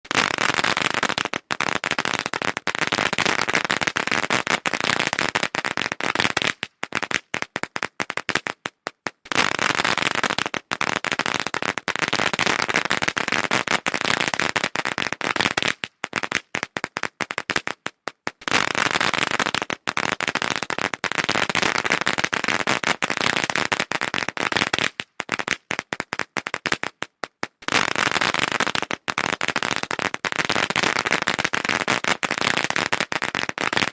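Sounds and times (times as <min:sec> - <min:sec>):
firecrackers crackling: 0:00.1 - 0:33.9.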